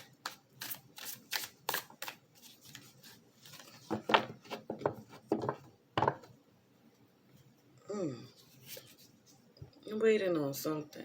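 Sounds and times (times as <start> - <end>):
cards rustling and snapping: 0.0 - 4.6.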